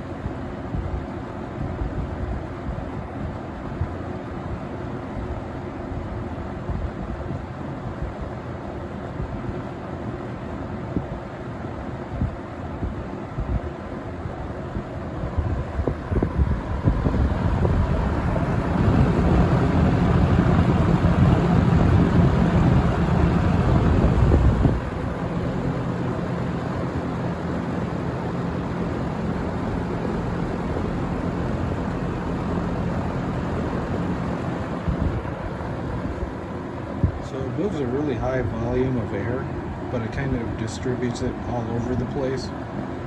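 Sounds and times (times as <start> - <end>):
box fan running: 0.0 - 43.0
wind buffeting microphone: 12.1 - 28.4, 29.0 - 38.9.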